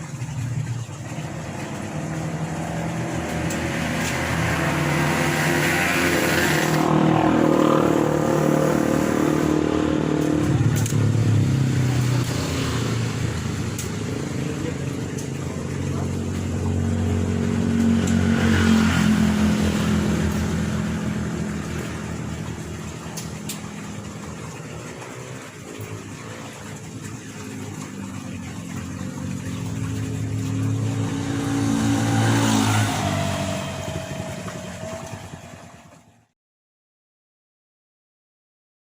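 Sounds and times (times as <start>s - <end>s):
motor vehicles passing by: 0.0s - 36.3s.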